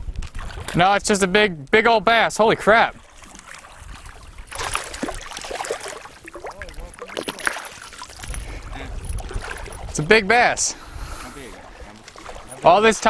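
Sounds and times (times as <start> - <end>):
fish thrashing in water: 2.9 - 10.0, 11.5 - 13.0.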